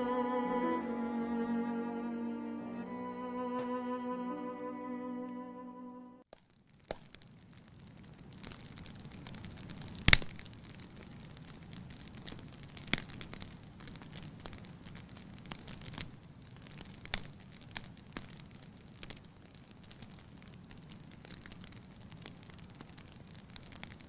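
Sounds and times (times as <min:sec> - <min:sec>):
sharp clicks and crackles: 0:06.3 - 0:24.0.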